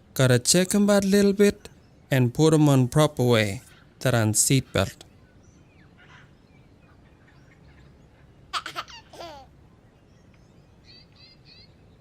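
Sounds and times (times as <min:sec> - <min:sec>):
small child laughing or babbling: 0:08.5 - 0:09.6.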